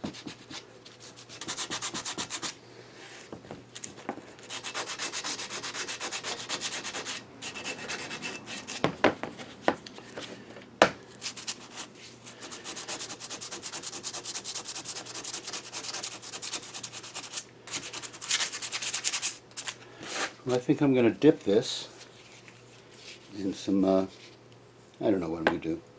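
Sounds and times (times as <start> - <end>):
hand sanding metal part: 1.2 - 2.6, 4.4 - 8.9, 11.2 - 19.3.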